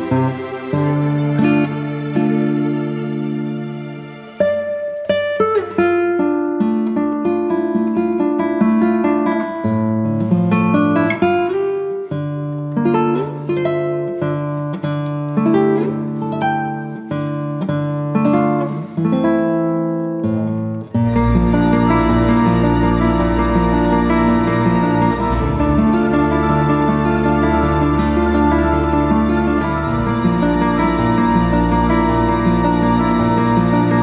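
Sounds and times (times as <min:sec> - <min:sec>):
musical accompaniment: 0:00.0 - 0:05.0, 0:20.9 - 0:34.0
acoustic guitar plucked notes: 0:00.0 - 0:34.0.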